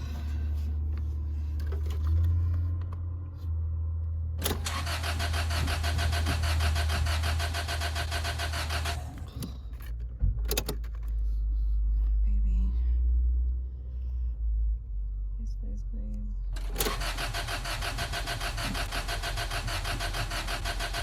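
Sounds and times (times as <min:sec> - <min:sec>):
car starter cranking engine: 0:04.4 - 0:11.2, 0:16.6 - 0:21.0.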